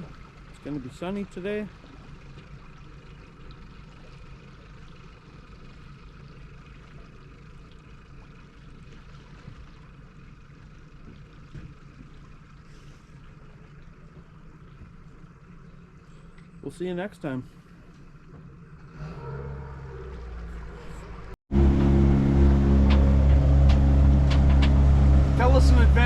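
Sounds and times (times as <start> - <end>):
boat motor humming: 0.0 - 26.0.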